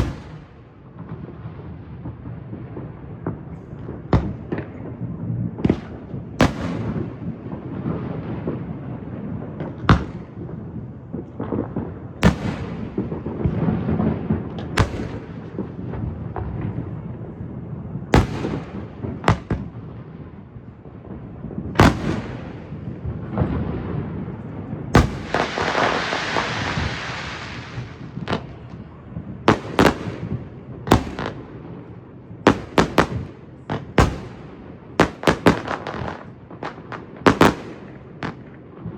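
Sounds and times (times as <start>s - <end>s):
fireworks bursting with sharp bangs: 0.0s - 38.9s
fireworks crackling hiss: 21.8s - 31.5s.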